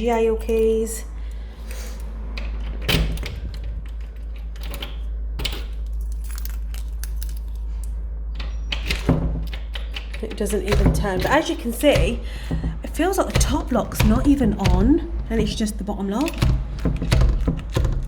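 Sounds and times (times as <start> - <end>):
keys jangling: 0.0 - 12.2
steady low rumble: 0.0 - 18.0.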